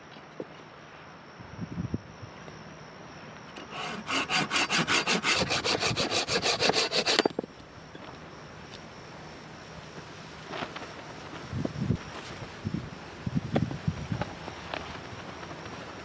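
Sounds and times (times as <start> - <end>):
hand saw cutting wood: 3.6 - 7.3.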